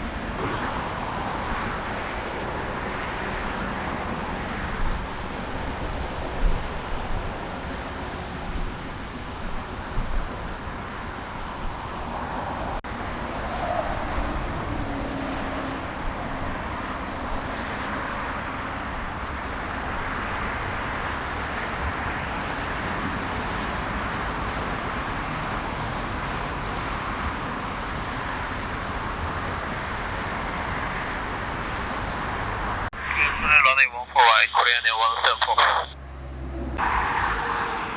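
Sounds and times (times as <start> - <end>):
wind buffeting microphone: 0.0 - 12.8
jet engines roaring: 0.0 - 37.9.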